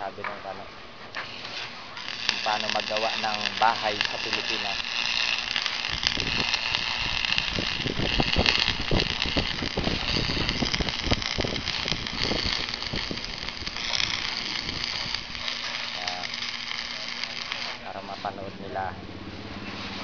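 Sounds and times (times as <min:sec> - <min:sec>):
steady hiss: 0:00.0 - 0:20.0.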